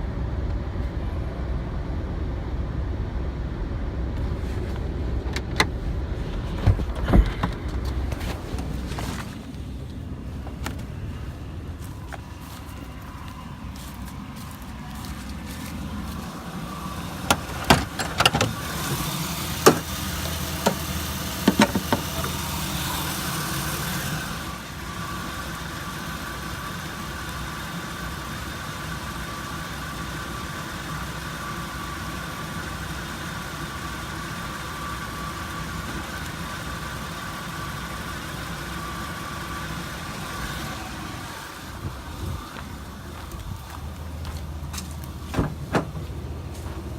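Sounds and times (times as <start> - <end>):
faint whine: 0.0 - 26.7
car engine and road drone: 0.0 - 46.9
sharp knocks and rattles: 20.6 - 22.4.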